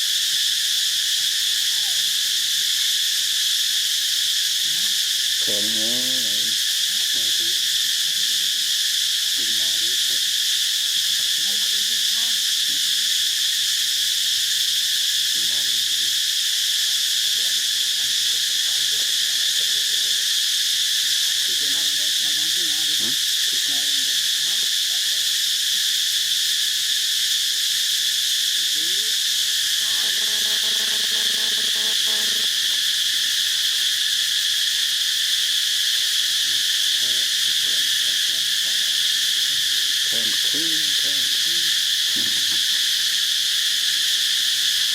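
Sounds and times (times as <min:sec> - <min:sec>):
high-pitched insect chorus: 0:00.0 - 0:44.9
faint low voices: 0:36.5 - 0:42.7.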